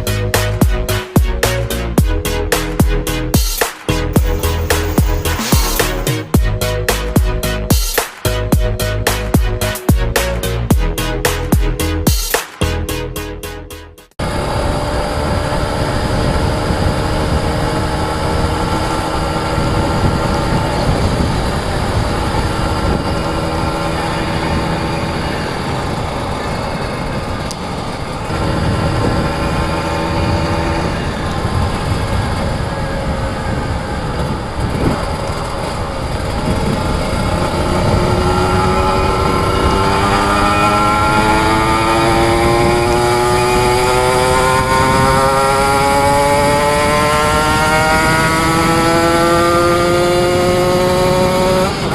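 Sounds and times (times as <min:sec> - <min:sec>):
motorcycle engine running: 0:00.0 - 0:12.3, 0:14.2 - 0:51.9
wind noise on microphone: 0:14.2 - 0:51.9.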